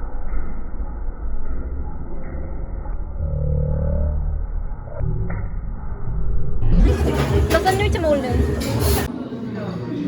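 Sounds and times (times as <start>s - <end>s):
low rumble: 0.0s - 7.5s.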